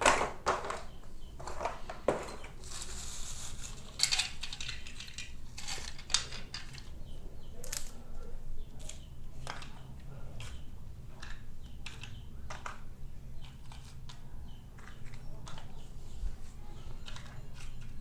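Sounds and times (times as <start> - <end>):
plastic toy pieces clicking: 2.7 - 6.9, 11.2 - 12.8, 17.0 - 18.0.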